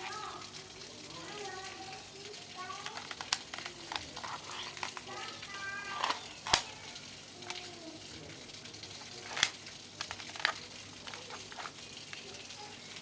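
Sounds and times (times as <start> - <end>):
steady crackly hiss: 0.0 - 13.0
pistol parts clicking: 2.8 - 5.1, 6.0 - 6.7, 9.0 - 12.2.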